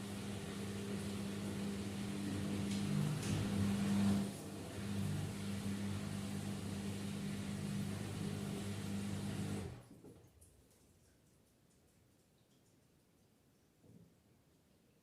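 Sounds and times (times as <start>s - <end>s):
washing machine spinning: 0.0s - 9.9s.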